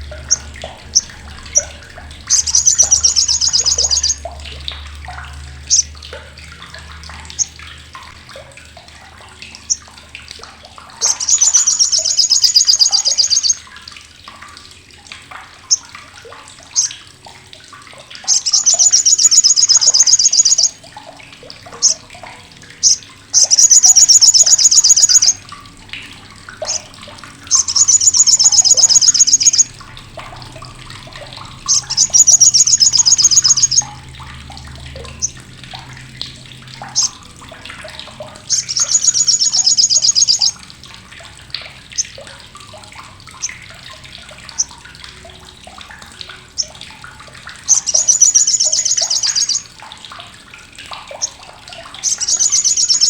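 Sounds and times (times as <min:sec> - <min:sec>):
soft bird chirps: 0:00.0 - 0:04.3, 0:11.0 - 0:13.6, 0:18.2 - 0:20.8, 0:22.8 - 0:25.4, 0:26.6 - 0:26.9, 0:27.5 - 0:29.7, 0:31.7 - 0:34.0, 0:38.4 - 0:40.6, 0:47.7 - 0:49.7, 0:52.0 - 0:53.0
bird harsh chattering trill: 0:02.3 - 0:04.2, 0:11.0 - 0:13.6, 0:18.3 - 0:20.7, 0:22.8 - 0:25.4, 0:27.5 - 0:29.6, 0:31.7 - 0:33.8, 0:38.5 - 0:40.5, 0:47.7 - 0:49.6, 0:52.0 - 0:53.0.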